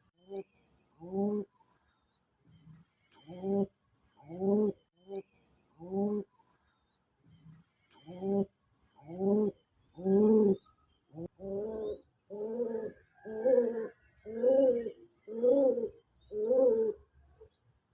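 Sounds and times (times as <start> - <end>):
pigeon cooing: 1.0 - 1.6, 3.2 - 4.8, 5.8 - 6.3, 8.0 - 10.6, 11.2 - 17.1.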